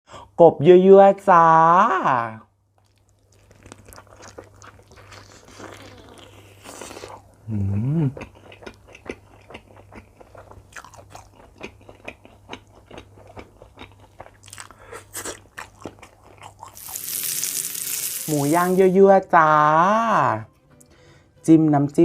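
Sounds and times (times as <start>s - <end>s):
crunchy chewing of food: 2.8s - 7.4s, 8.1s - 18.3s
person humming mmm: 5.5s - 8.3s.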